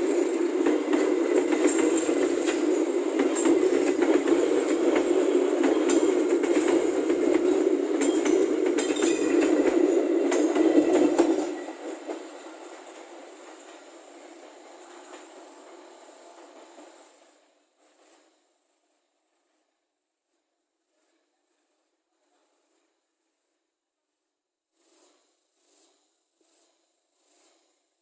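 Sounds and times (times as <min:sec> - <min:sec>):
wheels clacking over rail joints: 0:00.0 - 0:13.9
train passing at high speed: 0:00.0 - 0:18.3.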